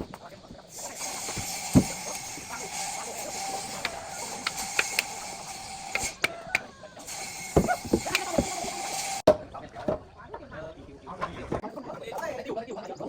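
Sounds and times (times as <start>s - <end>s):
dull thumps: 1.2s - 3.1s, 7.5s - 8.7s
sharp clicks and knocks: 3.7s - 5.2s, 5.9s - 6.6s.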